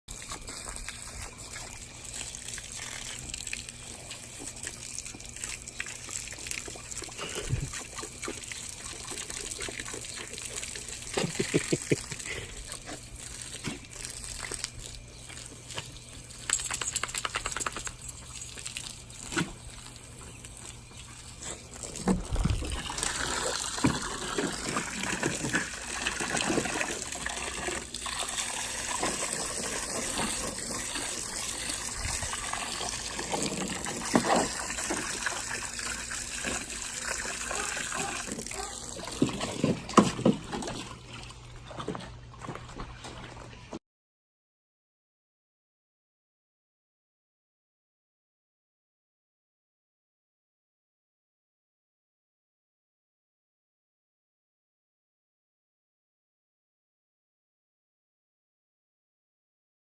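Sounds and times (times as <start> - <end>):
water gushing from hose: 0.1 - 16.7, 17.4 - 41.2
water splashing: 17.3 - 43.6.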